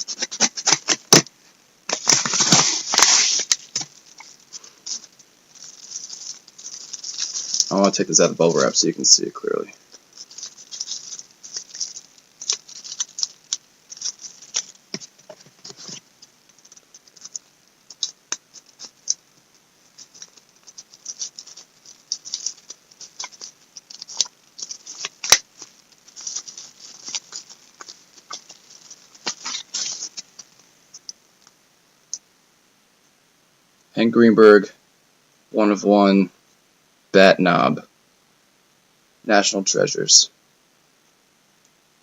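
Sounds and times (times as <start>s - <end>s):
bubble wrap crinkling: 0.0s - 31.5s.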